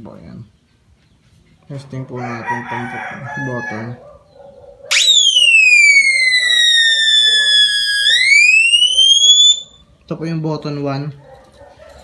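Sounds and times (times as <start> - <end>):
electronic siren tone sweeping: 4.9 - 9.7.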